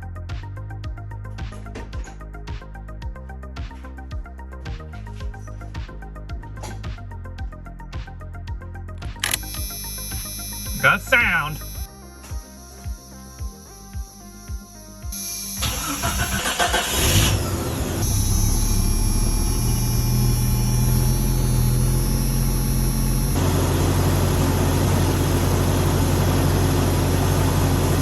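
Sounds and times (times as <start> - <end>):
car engine cranking and idling: 15.6 - 28.0.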